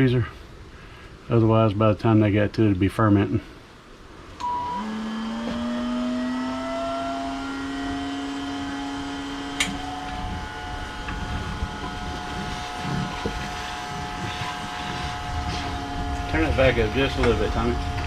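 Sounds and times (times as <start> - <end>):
vacuum motor whine: 4.4 - 18.0.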